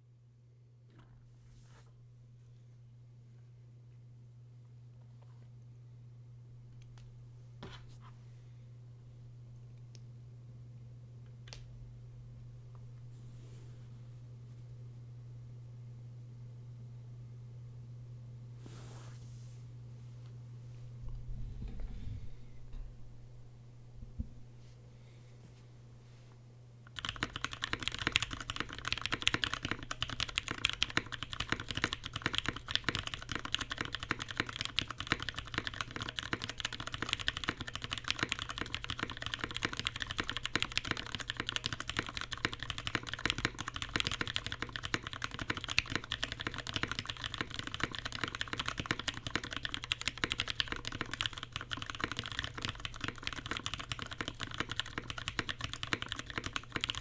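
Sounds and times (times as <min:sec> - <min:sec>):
fast typing on mechanical keyboard: 0:26.9 - 0:57.0.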